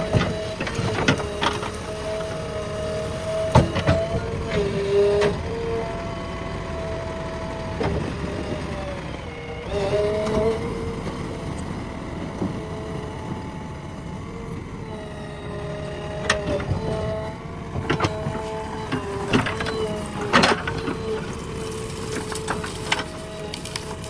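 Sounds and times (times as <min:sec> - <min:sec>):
diesel engine running: 0:00.0 - 0:24.0
engine whine: 0:00.0 - 0:24.0.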